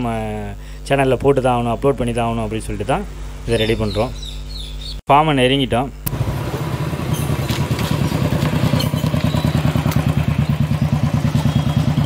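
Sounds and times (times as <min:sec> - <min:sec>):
motorcycle engine running: 0:06.1 - 0:12.0.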